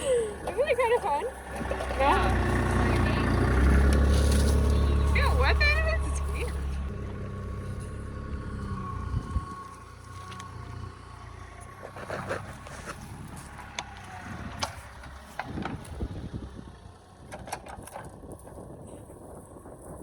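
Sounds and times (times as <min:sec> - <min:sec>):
digging knocks and clanks: 0:00.0 - 0:08.0
mini excavator engine running: 0:00.0 - 0:20.0.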